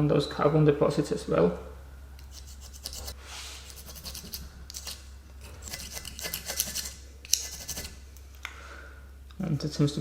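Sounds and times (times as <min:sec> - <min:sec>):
steady low hum: 0:00.0 - 0:10.0
plastic scraper rasping on metal: 0:03.8 - 0:08.0.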